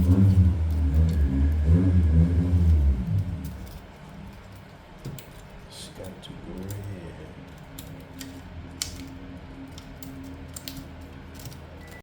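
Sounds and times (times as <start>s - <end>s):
steady low hum: 0.0s - 12.0s
plastic laptop parts clicking: 6.6s - 12.0s.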